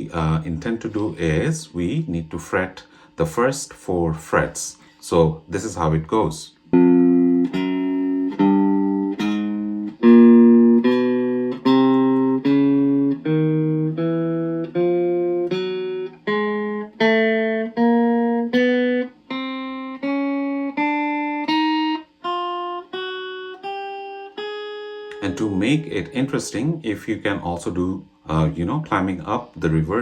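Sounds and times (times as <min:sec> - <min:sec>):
electric guitar single notes: 0:06.5 - 0:30.0.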